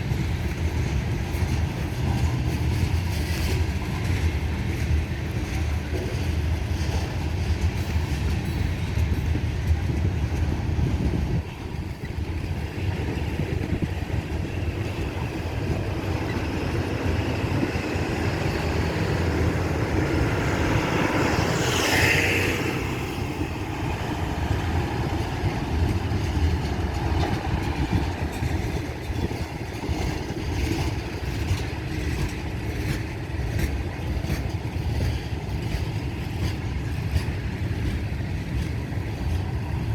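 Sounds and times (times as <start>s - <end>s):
freight train wheels rumbling: 0.0s - 39.9s.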